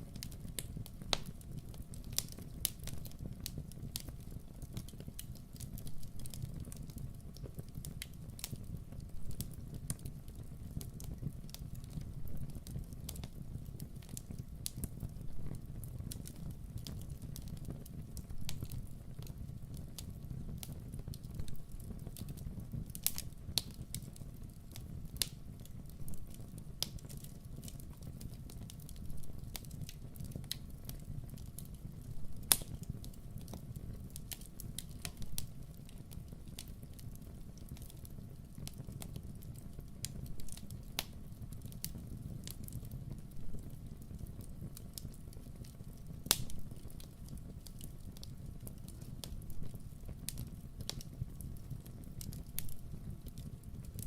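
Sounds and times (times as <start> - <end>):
campfire crackling: 0.0 - 54.0
fire popping and snapping: 0.0 - 54.0
low rumble of burning: 0.0 - 54.0.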